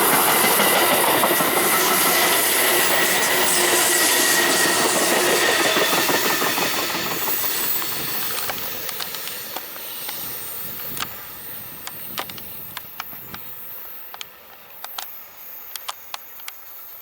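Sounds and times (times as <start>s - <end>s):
train rushing on rails: 0.0s - 17.0s
sharp clicks: 11.9s - 13.5s, 15.7s - 16.6s.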